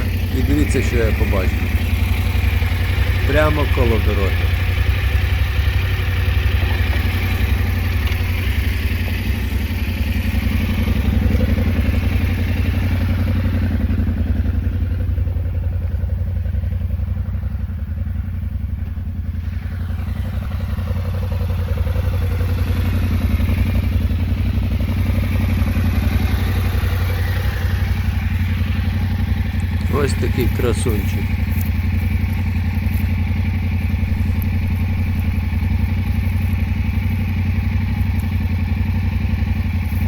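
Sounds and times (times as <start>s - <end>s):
motorcycle engine idling: 0.0s - 40.0s.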